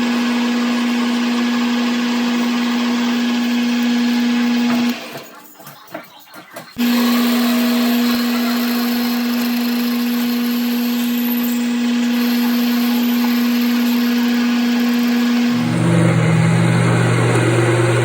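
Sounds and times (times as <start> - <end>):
machine-tool motor hum: 6.8 - 18.0.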